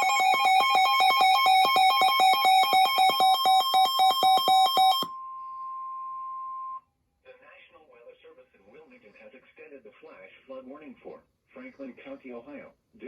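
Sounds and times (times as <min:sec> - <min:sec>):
steady alarm tone: 0:00.0 - 0:05.4.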